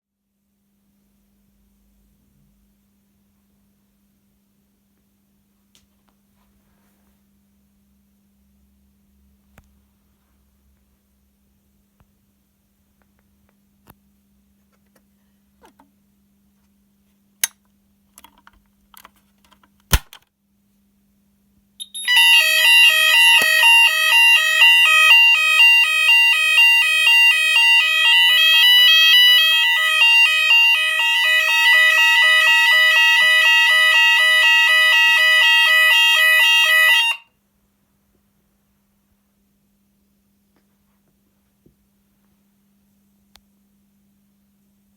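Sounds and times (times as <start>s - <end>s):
fire alarm alternating tone: 21.8s - 37.3s.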